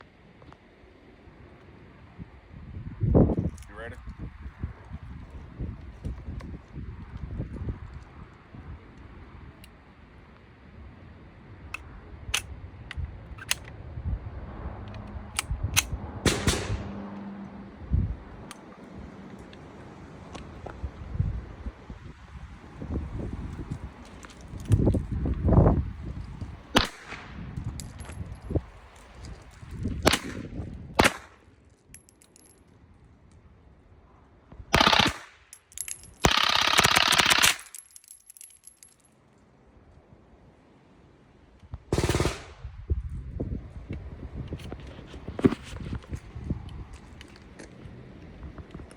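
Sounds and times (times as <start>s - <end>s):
rapid pistol gunfire: 16.2s - 16.9s, 34.8s - 35.4s, 41.9s - 42.6s
gunshots with echo: 16.2s - 17.0s.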